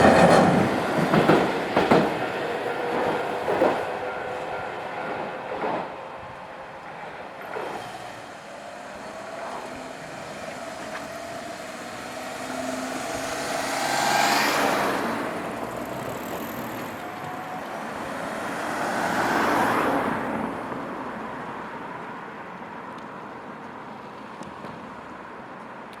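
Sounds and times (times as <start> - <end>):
vehicles driving past: 7.2 - 25.6.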